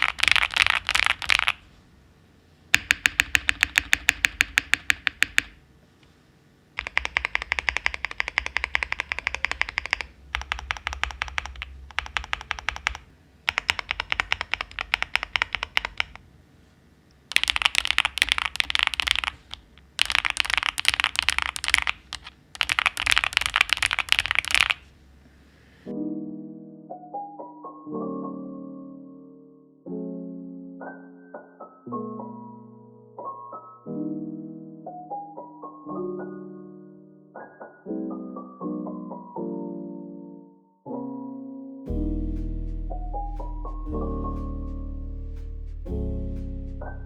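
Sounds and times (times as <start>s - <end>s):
mechanical keyboard typing: 0.0s - 1.6s, 2.8s - 5.6s, 6.8s - 16.2s, 17.3s - 24.8s
piano music: 0.0s - 2.2s, 6.8s - 16.3s, 25.9s - 47.0s.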